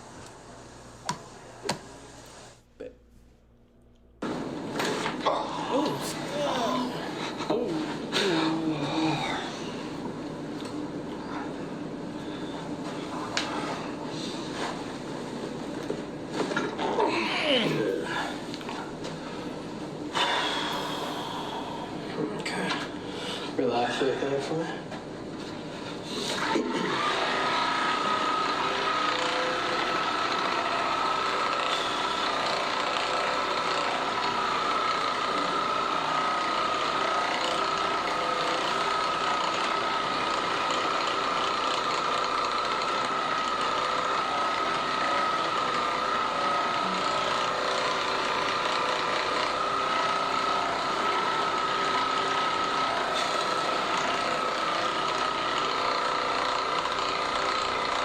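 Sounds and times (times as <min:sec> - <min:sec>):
small motor whining: 0:26.6 - 0:58.0.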